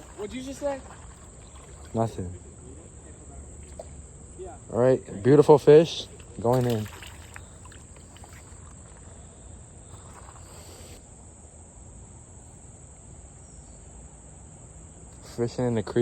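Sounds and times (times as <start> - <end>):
flowing creek water: 0.0 - 11.0
insect chorus: 0.0 - 16.0.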